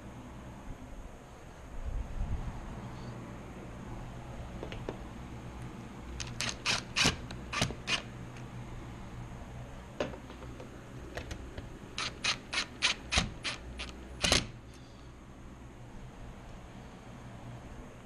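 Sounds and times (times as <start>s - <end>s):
hand tools tapping and clicking: 10.0s - 14.5s.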